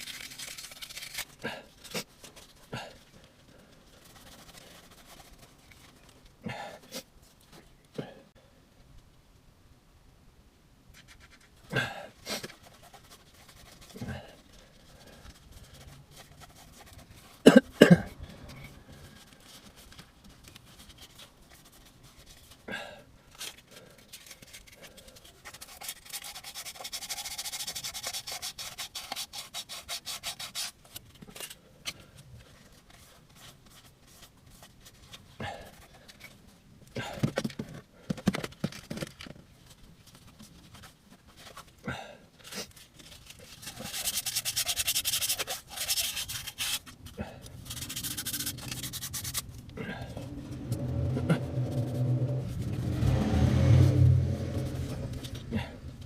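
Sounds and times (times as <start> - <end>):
brush scraping metal part: 43.4 - 46.9, 47.6 - 49.6.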